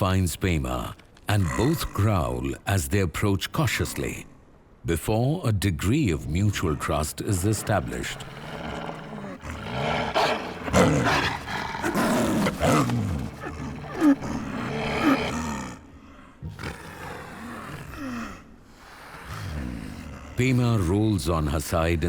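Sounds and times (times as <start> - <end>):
snow leopards growling: 6.0 - 21.6.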